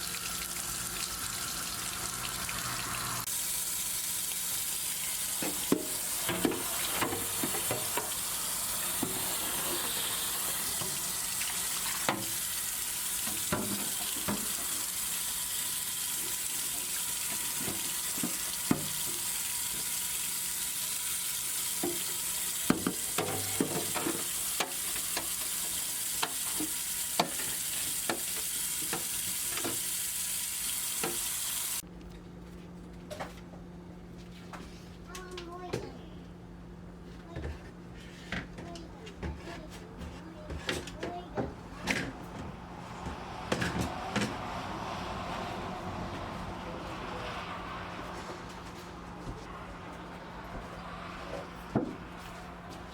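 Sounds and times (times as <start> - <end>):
water running from a tap: 0.0 - 31.8
containers clinking and knocking: 5.4 - 12.4, 21.8 - 29.8.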